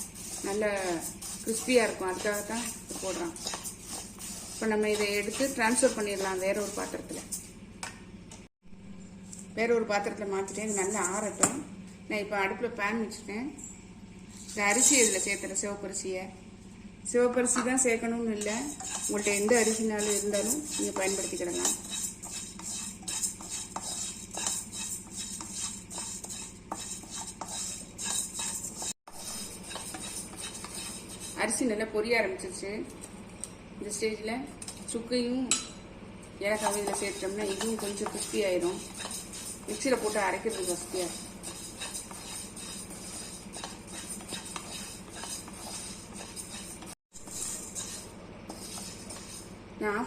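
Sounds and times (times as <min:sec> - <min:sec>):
spoon scraping a pan: 0:00.0 - 0:07.6, 0:10.4 - 0:11.5, 0:14.3 - 0:15.5, 0:18.4 - 0:31.4, 0:36.5 - 0:49.5
steady low hum: 0:00.0 - 0:50.0.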